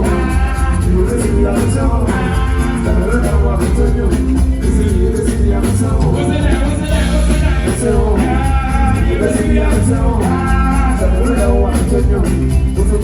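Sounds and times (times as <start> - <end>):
live band playing: 0.0 - 13.0
person singing: 0.0 - 13.0.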